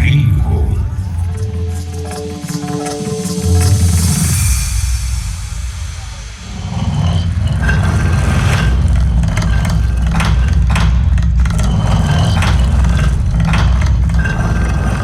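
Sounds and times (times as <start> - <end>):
deep rumble over loudspeakers: 0.0 - 1.8, 5.1 - 15.0.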